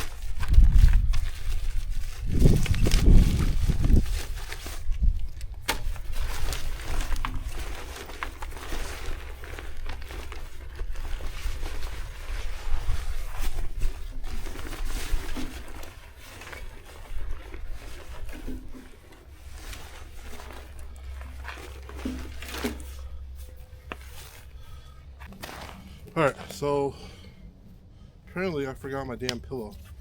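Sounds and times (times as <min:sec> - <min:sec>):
wind rumble on microphone: 0:00.0 - 0:07.5
rustling handling noise: 0:00.0 - 0:30.0.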